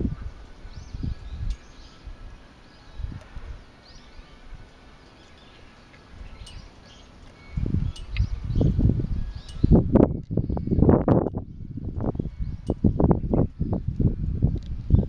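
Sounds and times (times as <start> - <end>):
outdoor background noise: 0.0 - 15.0
faint bird chirps: 0.2 - 9.8.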